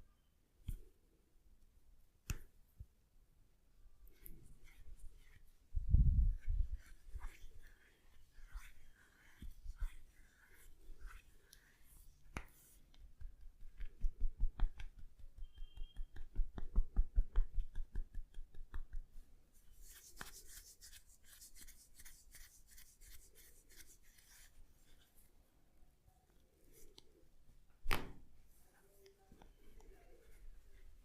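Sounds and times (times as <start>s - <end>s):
hands rubbing through hair: 4.1s - 25.3s
hands tapping on head: 12.3s - 19.2s.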